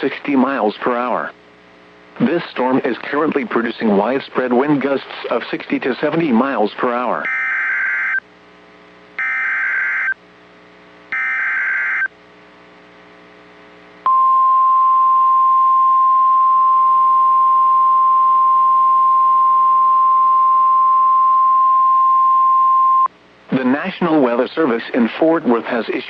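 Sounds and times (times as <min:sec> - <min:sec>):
steady warning alarm tone: 0:07.2 - 0:08.2, 0:09.2 - 0:10.2, 0:11.1 - 0:12.1
warbling digital data tones: 0:11.2 - 0:12.1.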